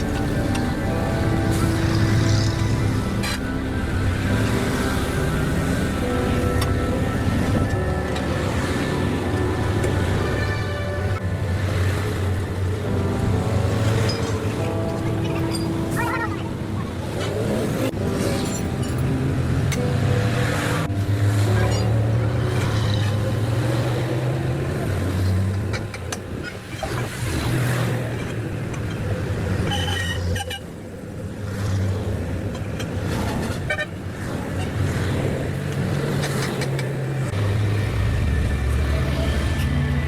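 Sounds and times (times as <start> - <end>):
road traffic: 0.0 - 40.0.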